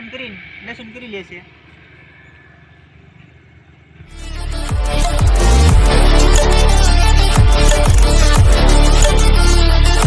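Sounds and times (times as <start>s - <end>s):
electronic dance music: 4.1s - 10.0s.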